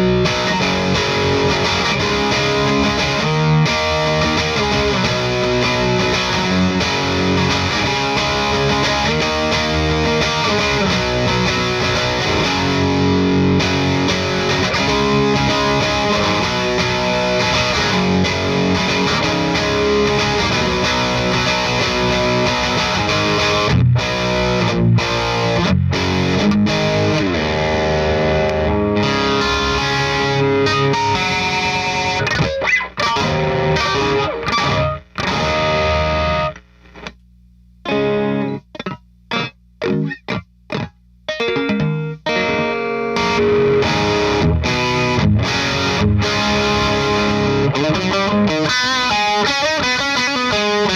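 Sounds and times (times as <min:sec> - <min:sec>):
overdriven electric guitar: 0:00.0 - 0:50.9.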